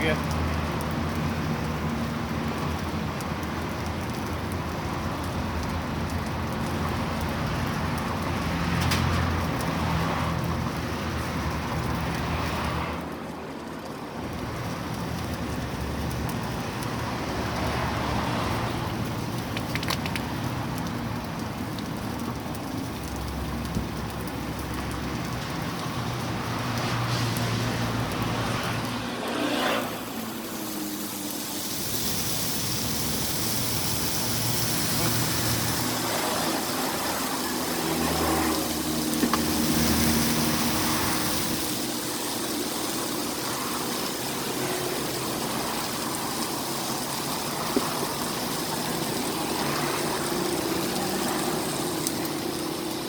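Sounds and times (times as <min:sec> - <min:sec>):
burger patties sizzling on griddle: 0:00.0 - 0:13.1, 0:14.0 - 0:53.0.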